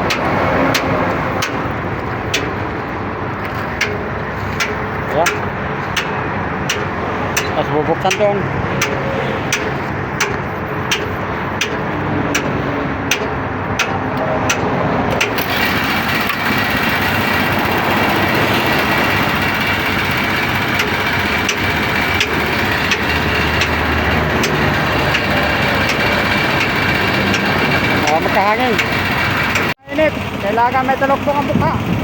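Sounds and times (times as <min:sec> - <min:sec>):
light ticking: 0:00.0 - 0:15.6, 0:16.2 - 0:29.8
air compressor running: 0:15.1 - 0:32.0.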